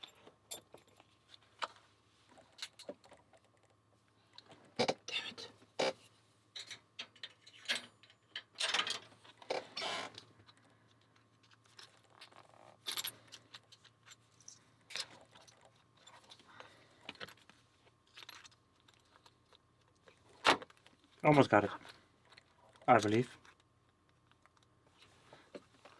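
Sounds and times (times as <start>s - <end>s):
padlock metal clinks and scrapes: 5.0s - 9.1s, 9.8s - 16.4s, 17.0s - 20.0s.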